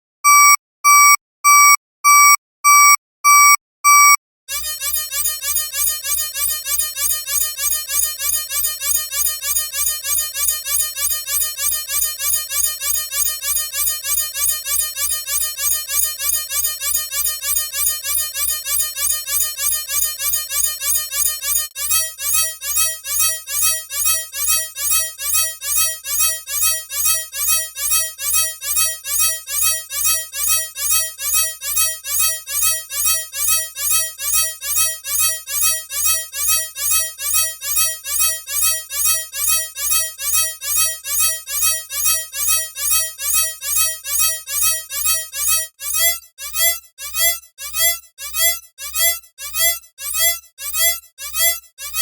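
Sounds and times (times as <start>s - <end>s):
electronic alarm chirping: 4.5s - 52.0s.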